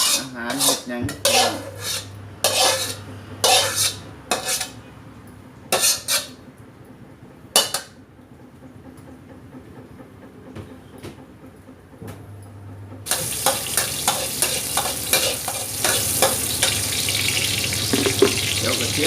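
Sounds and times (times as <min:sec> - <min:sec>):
metal utensil scraping a pan: 0:00.0 - 0:04.8, 0:05.7 - 0:06.4, 0:13.1 - 0:18.8.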